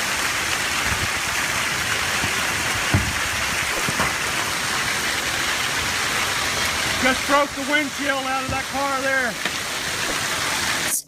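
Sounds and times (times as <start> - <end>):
heavy rain pouring: 0.0 - 11.0
dull thump: 2.8 - 4.2.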